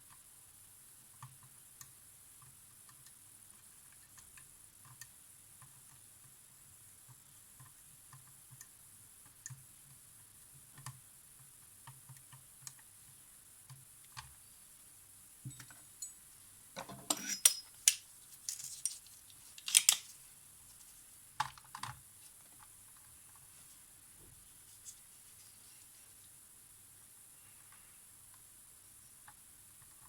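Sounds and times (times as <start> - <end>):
tools clicking and clinking: 16.8 - 19.0, 19.6 - 20.0.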